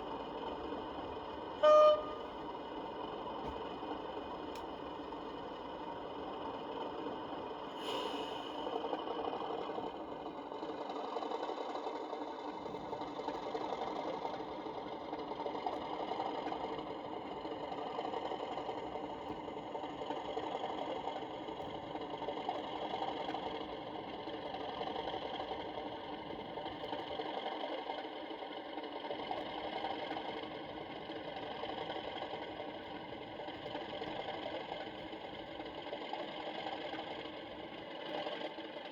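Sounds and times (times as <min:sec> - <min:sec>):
model train diesel engine drone: 0:00.0 - 0:38.9
brief high-pitched sound: 0:01.6 - 0:02.2.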